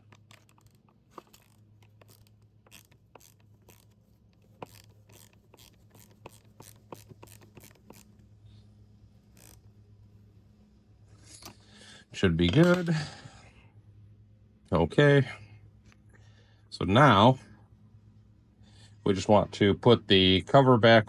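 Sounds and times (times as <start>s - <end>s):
wrench clicking and scraping: 0.0s - 8.2s, 9.2s - 10.3s, 12.4s - 13.2s.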